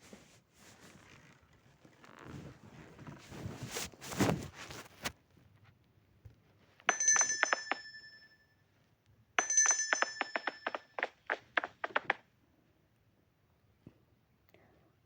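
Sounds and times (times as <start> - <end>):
rustling: 0.0 - 5.8
electric bell ringing: 6.9 - 8.5, 9.4 - 11.0.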